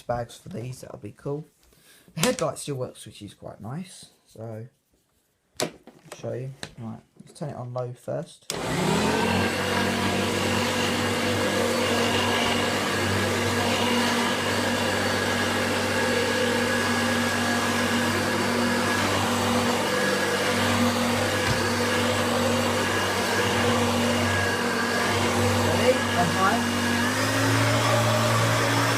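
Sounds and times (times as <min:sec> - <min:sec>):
upright vacuum cleaner running: 0:08.5 - 0:28.9.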